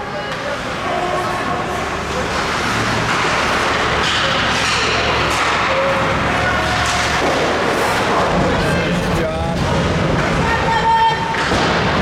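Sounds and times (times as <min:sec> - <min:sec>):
skates scraping on ice: 0:00.4 - 0:12.0
distant shouts: 0:10.3 - 0:11.5.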